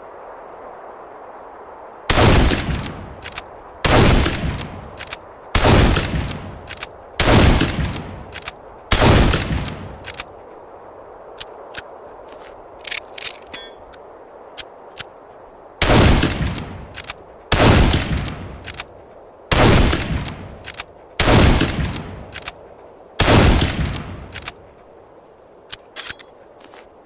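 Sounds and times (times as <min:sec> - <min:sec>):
rifle shots echoing: 0:02.1 - 0:03.0, 0:03.8 - 0:09.9, 0:15.8 - 0:18.5, 0:19.5 - 0:22.4, 0:23.2 - 0:24.4
rifle bolt clicks: 0:12.8 - 0:14.0, 0:21.6 - 0:22.6, 0:23.6 - 0:24.6, 0:25.7 - 0:26.3.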